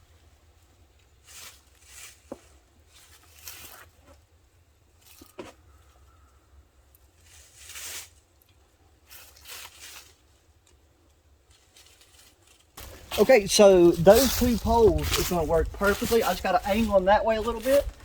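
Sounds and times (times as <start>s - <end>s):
rustling and crunching: 1.1s - 4.3s, 7.1s - 10.8s, 11.4s - 18.0s
short uneven scrapes: 12.1s - 18.0s.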